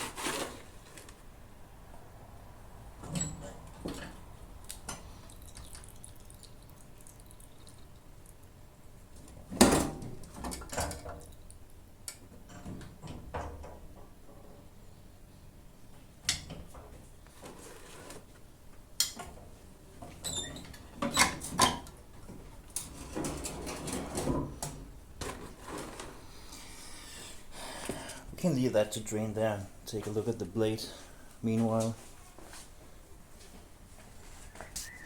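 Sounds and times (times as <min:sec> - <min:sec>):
rustling handling: 0:00.0 - 0:01.2.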